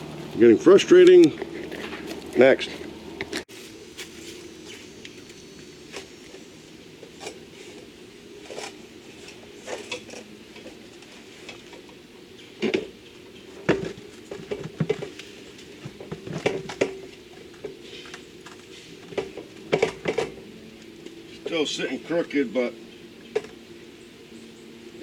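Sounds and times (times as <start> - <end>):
hard plastic knocks and clatter: 13.6 - 15.2, 15.8 - 20.4.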